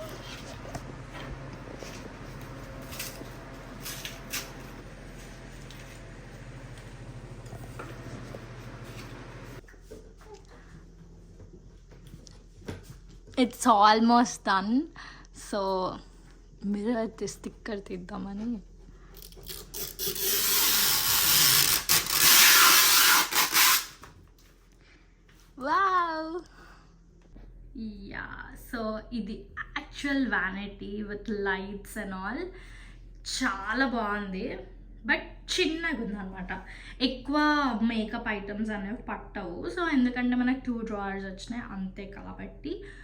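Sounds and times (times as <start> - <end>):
low hum: 0.0 - 9.6
plastic film peeling off: 19.4 - 24.0.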